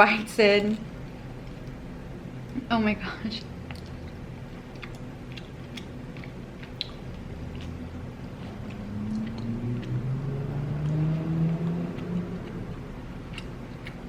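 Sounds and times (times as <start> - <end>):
person chewing and biting: 3.5 - 14.0
low hum rising in pitch: 6.4 - 14.0.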